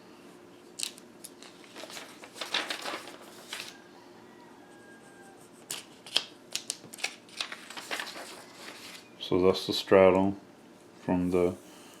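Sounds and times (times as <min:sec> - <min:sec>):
paper rustling: 0:00.8 - 0:03.8, 0:05.7 - 0:09.1.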